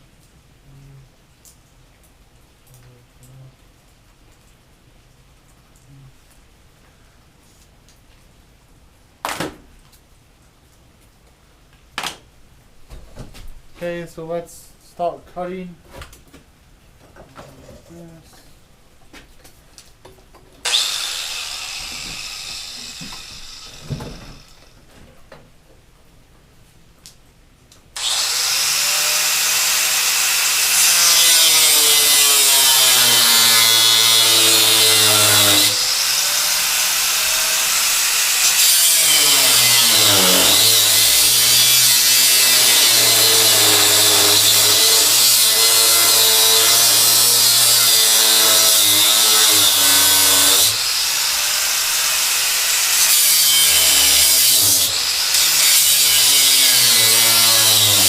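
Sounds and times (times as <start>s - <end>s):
electric power tool cutting: 20.7s - 24.6s, 28.0s - 58.0s
hiss of cutting: 20.7s - 24.8s, 28.0s - 58.0s.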